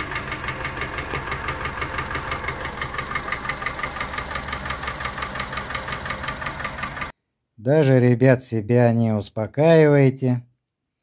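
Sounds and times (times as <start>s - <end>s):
car engine knocking: 0.0s - 7.1s.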